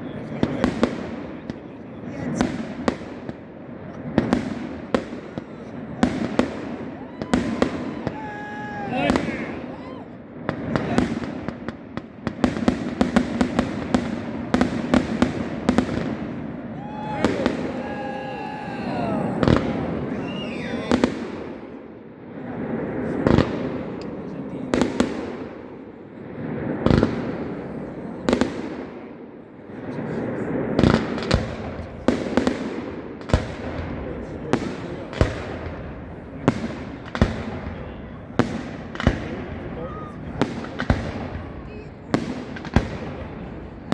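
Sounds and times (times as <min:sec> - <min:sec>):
fireworks bangs: 0:04.0 - 0:23.8, 0:40.3 - 0:43.9.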